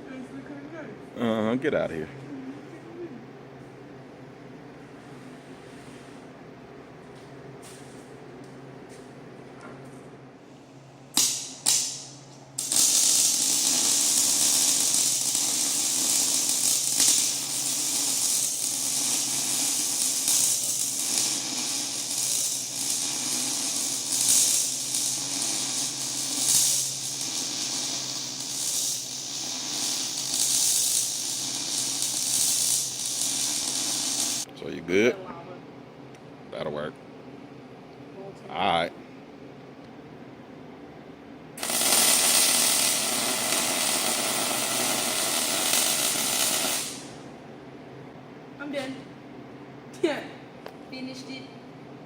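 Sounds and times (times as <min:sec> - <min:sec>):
welding arc crackling: 0:11.1 - 0:34.5, 0:41.6 - 0:47.3
welding machine humming: 0:11.1 - 0:34.5, 0:41.6 - 0:47.3
welding rod striking: 0:11.1 - 0:34.5, 0:41.6 - 0:47.2.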